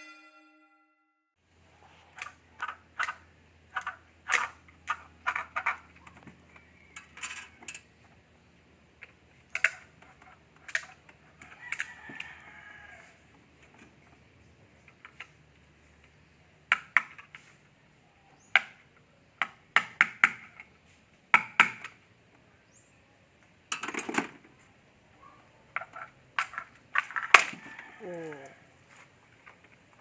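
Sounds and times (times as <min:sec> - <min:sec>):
hand tools clicking and clinking: 0:09.0 - 0:12.2.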